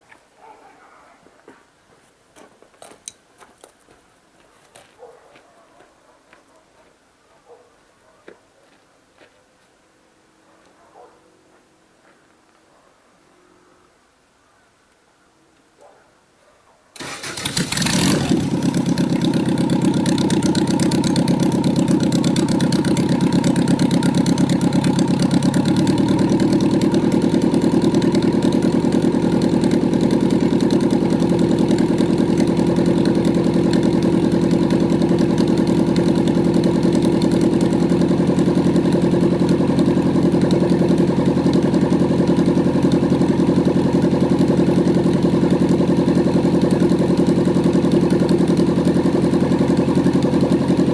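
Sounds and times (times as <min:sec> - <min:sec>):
helicopter engine running: 0:19.0 - 0:36.3.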